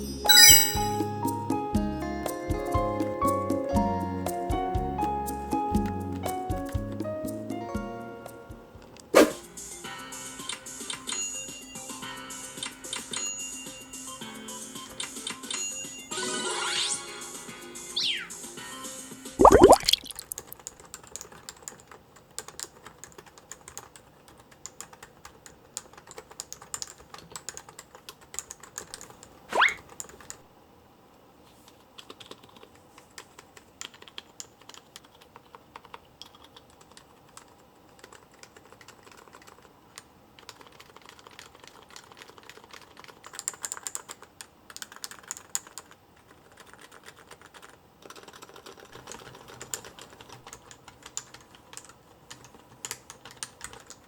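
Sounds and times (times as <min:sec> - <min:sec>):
soft keyboard typing: 0:00.3 - 0:01.0, 0:05.8 - 0:07.0, 0:19.4 - 0:30.5, 0:31.7 - 0:54.0.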